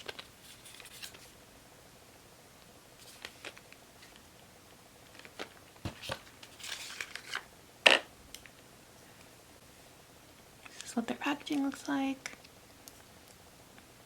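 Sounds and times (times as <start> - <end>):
paper or plastic crinkling: 0.0 - 1.3, 5.1 - 7.5.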